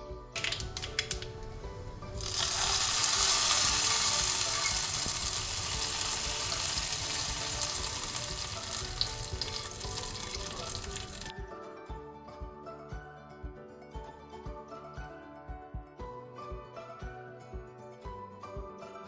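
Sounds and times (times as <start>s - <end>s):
soft background music: 0.0s - 19.0s
food sizzling in hot oil: 2.1s - 11.3s.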